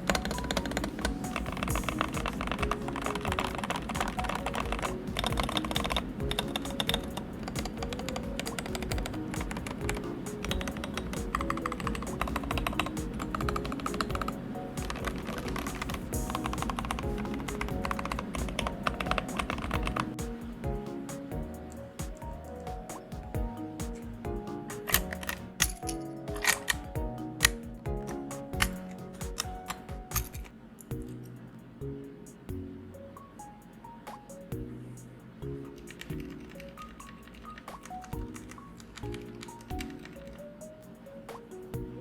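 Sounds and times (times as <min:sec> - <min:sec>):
mechanical keyboard typing: 0:00.0 - 0:20.4, 0:24.7 - 0:31.3, 0:35.8 - 0:40.4
soft background music: 0:00.0 - 0:42.0.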